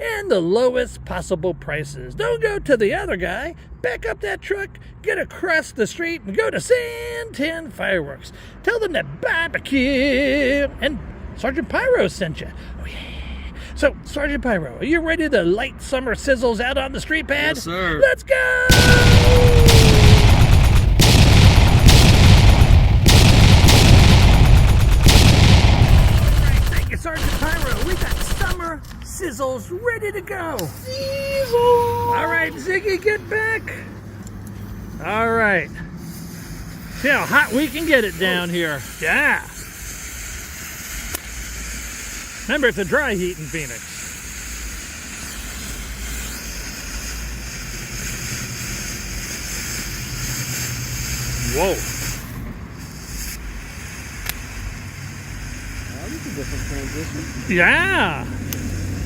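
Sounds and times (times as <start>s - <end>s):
fireworks crackling and booming: 18.7s - 28.6s
fountain firework hissing: 18.7s - 28.6s, 36.0s - 59.0s.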